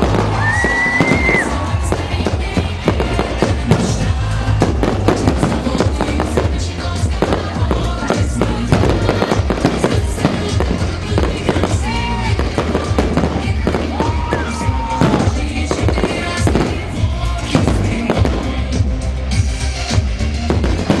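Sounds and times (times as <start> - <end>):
fireworks bursting and crackling: 0.0 - 21.0
music: 0.0 - 21.0.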